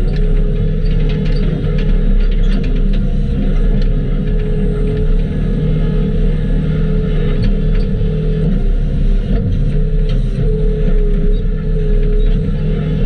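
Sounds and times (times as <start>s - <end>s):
skid steer engine running: 0.0s - 13.0s.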